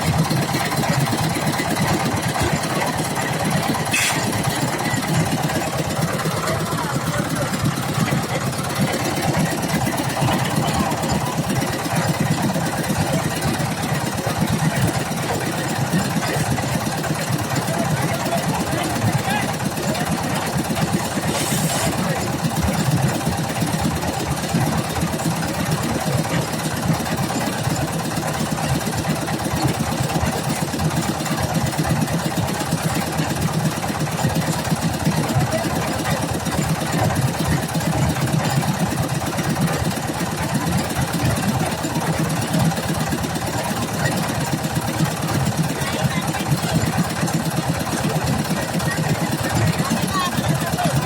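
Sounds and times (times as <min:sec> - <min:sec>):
construction machinery engine running: 0:00.0 - 0:51.0
faint voices: 0:01.4 - 0:23.2, 0:41.6 - 0:51.0.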